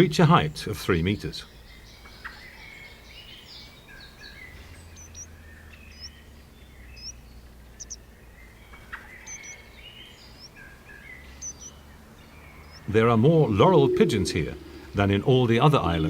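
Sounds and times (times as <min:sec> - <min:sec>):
small birds chirping and singing: 0:00.0 - 0:16.0
low steady hum: 0:11.5 - 0:16.0.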